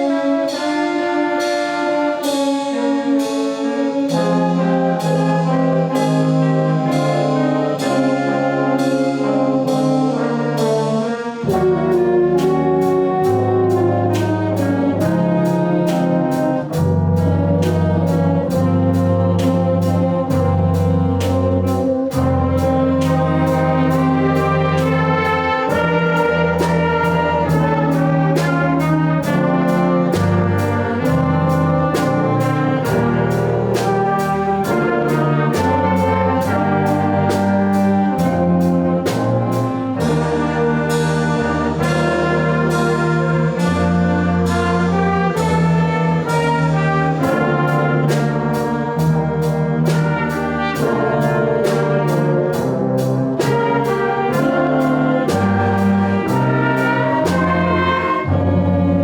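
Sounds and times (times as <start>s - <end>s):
steady percussive beat: 0.0s - 58.9s
brass ensemble playing holiday music: 0.0s - 59.0s.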